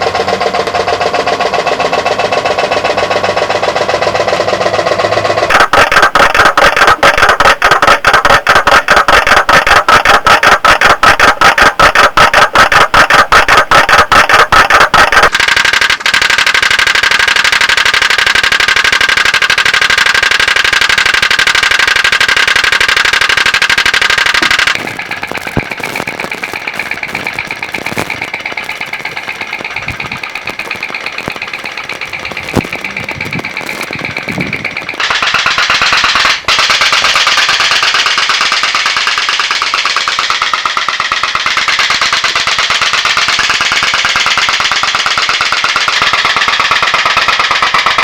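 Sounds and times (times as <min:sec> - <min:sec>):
toy steam boat popping: 0:00.0 - 0:48.0.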